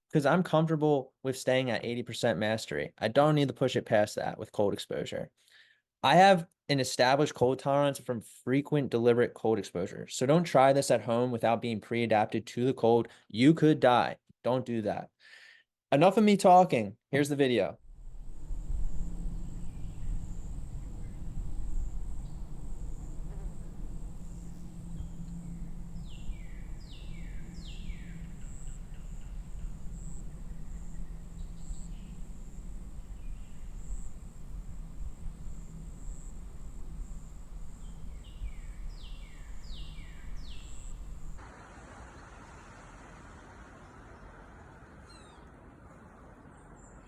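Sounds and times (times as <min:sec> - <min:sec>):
thin high whine: 0:17.8 - 0:43.3
wind rumbling on microphone: 0:17.8 - 0:47.0.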